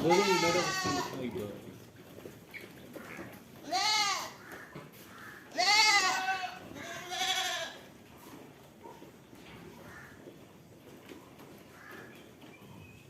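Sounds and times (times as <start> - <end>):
goats bleating: 0.0 - 1.3, 3.1 - 4.5, 5.3 - 7.9.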